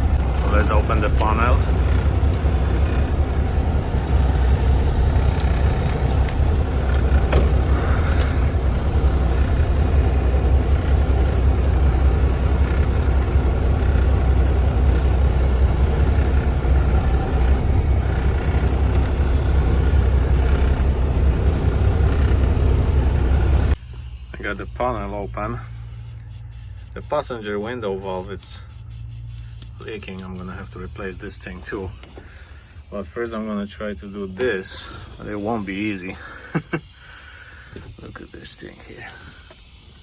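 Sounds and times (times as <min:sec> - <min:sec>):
diesel truck engine idling: 0:00.0 - 0:24.5.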